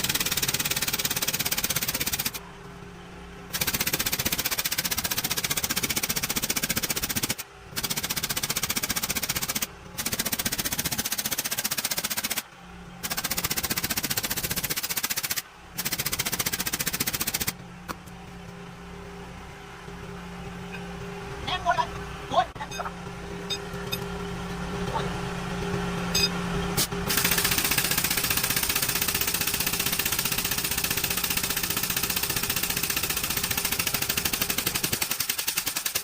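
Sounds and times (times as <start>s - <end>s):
pneumatic impact tool hammering: 0.0s - 2.4s, 3.5s - 12.4s, 13.0s - 18.0s, 26.2s - 36.0s
steady machine hum: 0.0s - 35.8s.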